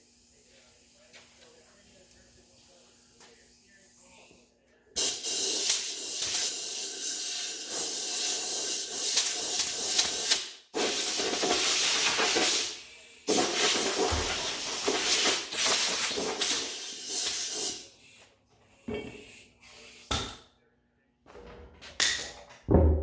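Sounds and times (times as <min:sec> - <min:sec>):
pressurized air jet hissing: 0:05.0 - 0:17.8.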